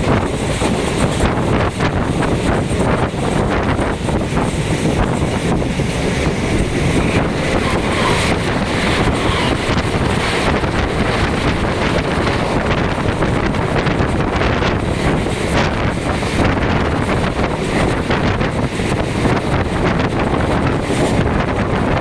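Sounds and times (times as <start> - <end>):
electric train rumbling: 0.0 - 22.0
wind buffeting microphone: 0.0 - 22.0.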